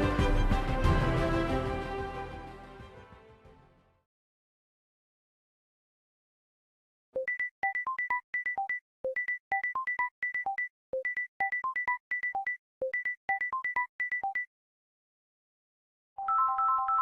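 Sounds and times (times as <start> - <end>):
phone ringtone beeps: 7.2 - 14.5, 16.2 - 17.0.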